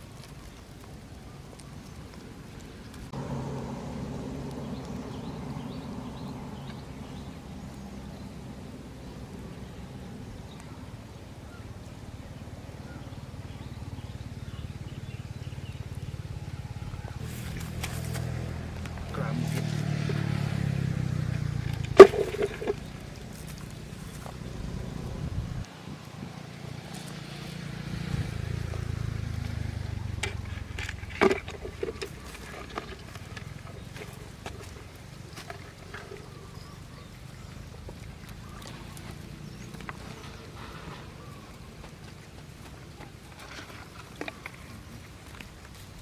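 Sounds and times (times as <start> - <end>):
pulsing engine hum: 0.9 - 46.0
small engine running: 3.1 - 8.1, 12.5 - 25.4.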